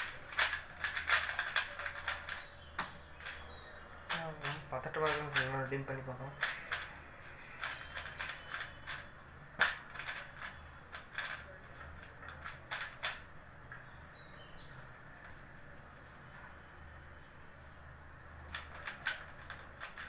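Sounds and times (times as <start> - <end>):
puzzle cube plastic clicks: 0.0 - 3.4, 4.1 - 13.3, 18.5 - 20.0.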